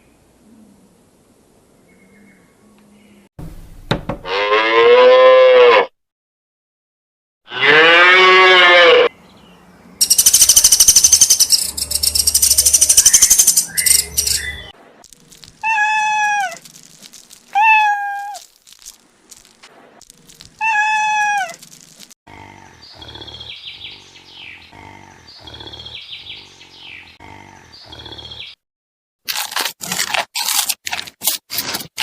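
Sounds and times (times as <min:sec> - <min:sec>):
cow mooing: 0:04.2 - 0:05.9, 0:07.5 - 0:09.1
cat meowing: 0:15.6 - 0:16.6, 0:17.5 - 0:18.4, 0:20.6 - 0:21.6.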